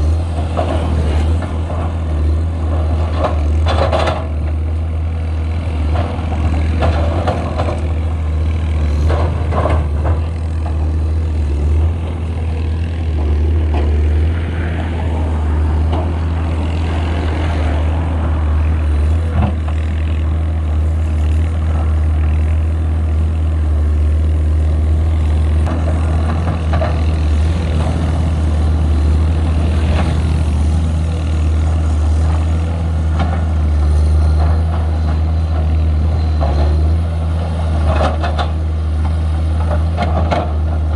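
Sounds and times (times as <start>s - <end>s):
excavator diesel engine drone: 0.0s - 40.9s
metal clanks and knocks: 9.0s - 10.8s.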